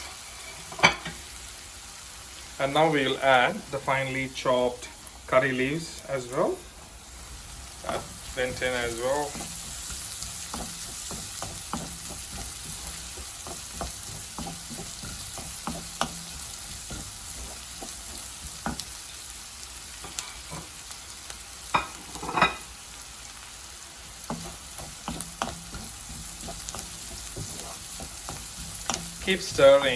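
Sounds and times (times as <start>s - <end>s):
food sizzling in hot oil: 0.0s - 29.9s
spoon tapping and scraping pan: 7.8s - 19.0s, 24.2s - 29.9s.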